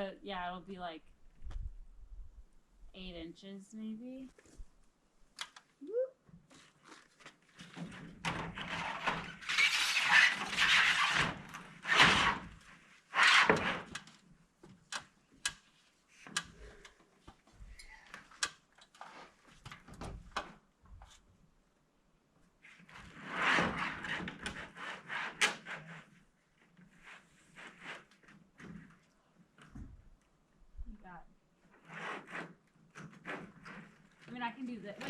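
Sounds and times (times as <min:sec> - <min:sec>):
roofing panel scraping and rattling: 0:07.4 - 0:14.2.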